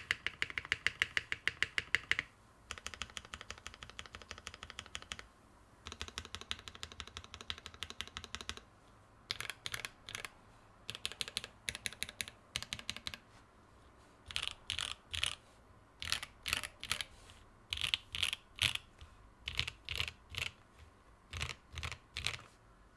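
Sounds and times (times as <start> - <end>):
typing on mechanical keyboard: 0.0 - 5.2, 5.8 - 8.7, 9.3 - 10.3, 10.9 - 13.2, 14.3 - 15.4, 16.0 - 20.6, 21.3 - 22.5.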